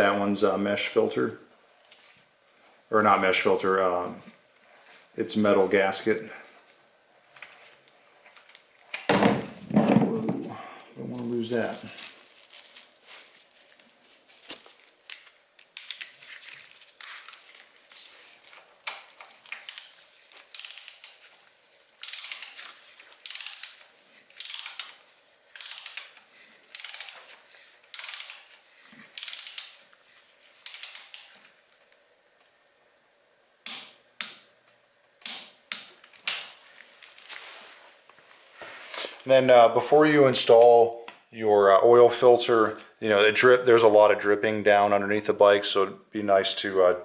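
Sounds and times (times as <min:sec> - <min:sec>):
hand ratchet clicking: 0:19.5 - 0:21.2, 0:22.0 - 0:23.8, 0:24.4 - 0:27.3, 0:27.9 - 0:28.5, 0:29.1 - 0:29.8, 0:30.6 - 0:31.4.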